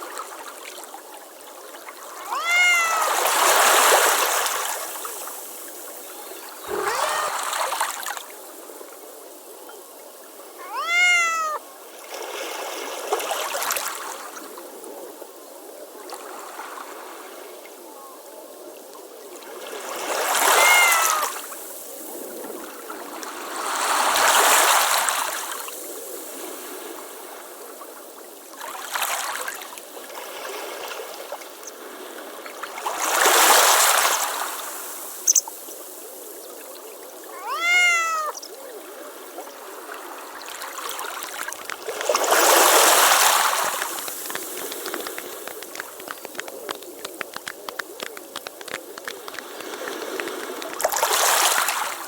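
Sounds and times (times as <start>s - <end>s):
cat meowing: 2.1s - 3.5s, 6.7s - 7.6s, 10.6s - 11.6s, 20.4s - 21.4s, 37.3s - 38.5s.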